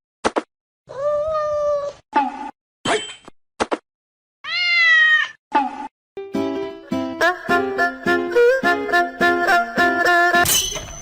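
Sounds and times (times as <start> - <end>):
cat meowing: 4.4 - 5.4.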